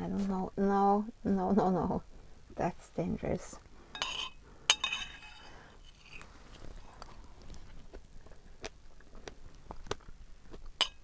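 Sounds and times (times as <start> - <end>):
chewing and biting: 6.7 - 10.8.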